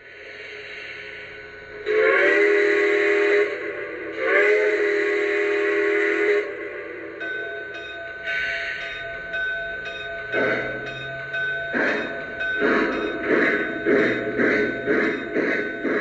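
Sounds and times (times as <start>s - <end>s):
steam hiss: 0.0s - 7.1s, 10.3s - 16.0s
train whistle blasts: 0.4s - 7.2s.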